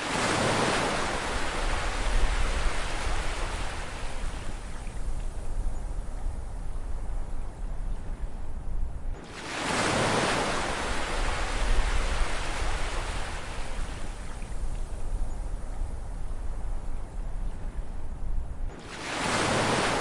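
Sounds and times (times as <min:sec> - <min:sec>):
ocean waves breaking: 0:00.0 - 0:04.3, 0:09.2 - 0:14.2, 0:18.7 - 0:20.0.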